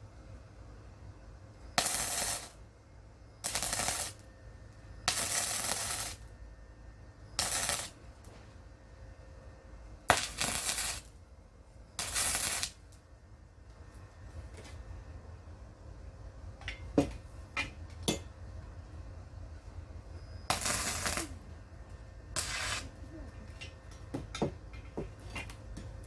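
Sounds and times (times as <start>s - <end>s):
crackling arc welding: 1.8s - 2.6s, 3.4s - 4.3s, 5.0s - 6.4s, 7.3s - 8.3s, 10.1s - 11.2s, 12.0s - 13.0s, 20.4s - 21.4s, 22.3s - 24.5s.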